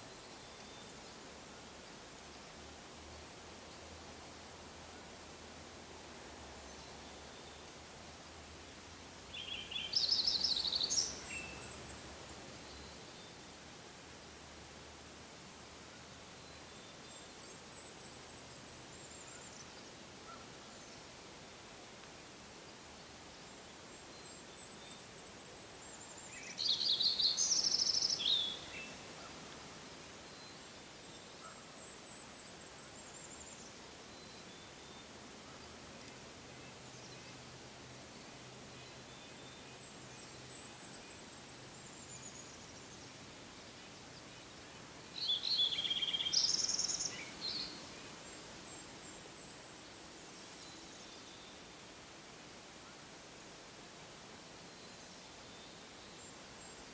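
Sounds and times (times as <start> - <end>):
songbird singing: 0.0 - 1.3, 6.5 - 13.5, 22.6 - 51.8, 54.5 - 56.9
forest background hiss: 0.0 - 56.9.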